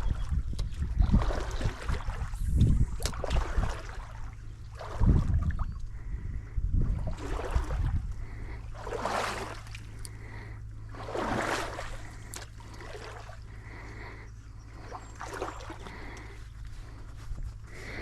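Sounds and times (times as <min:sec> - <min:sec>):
stream trickling: 0:08.8 - 0:13.6, 0:14.7 - 0:16.4.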